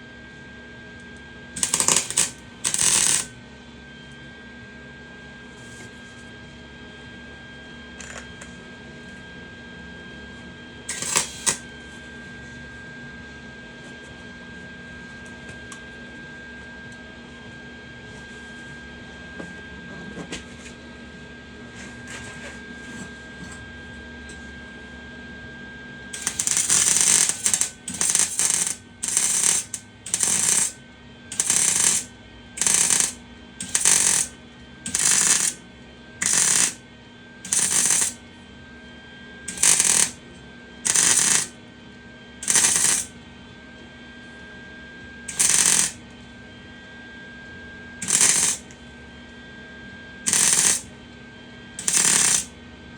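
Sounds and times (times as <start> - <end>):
welding arc crackle: 1.6 - 3.3, 10.9 - 11.6, 26.2 - 34.3, 34.9 - 35.6, 36.2 - 36.8, 37.5 - 38.2, 39.5 - 40.2, 40.9 - 41.5, 42.4 - 43.1, 45.3 - 46.0, 48.0 - 48.7, 50.3 - 50.9, 51.8 - 52.5.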